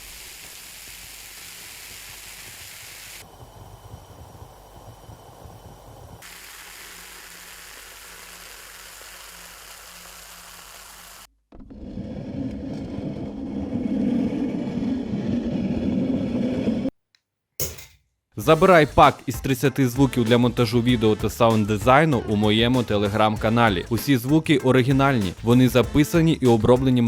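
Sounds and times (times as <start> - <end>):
soda fizzing: 0.0 - 11.3.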